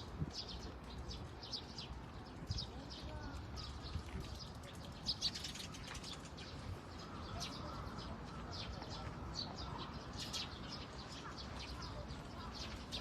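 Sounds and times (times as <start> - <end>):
birds chirping: 0.0 - 13.0.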